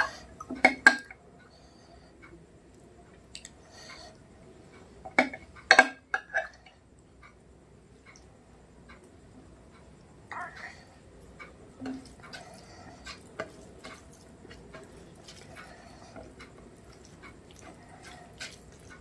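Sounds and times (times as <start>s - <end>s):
eating sounds: 6.5s - 19.0s.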